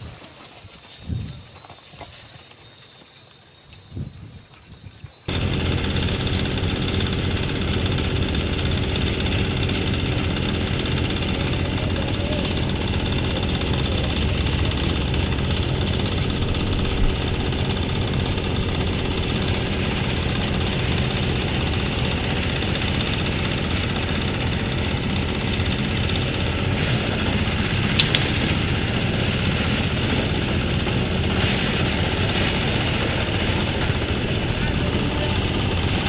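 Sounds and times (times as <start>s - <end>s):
engine running: 5.3s - 36.0s
sharp tick: 28.0s - 28.4s.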